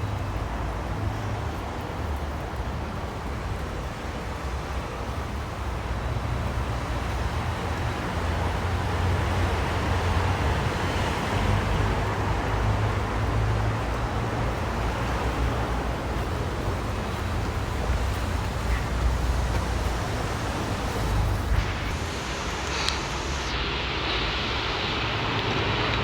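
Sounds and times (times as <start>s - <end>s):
steady rushing noise: 0.0s - 26.0s
low rumble: 16.7s - 26.0s.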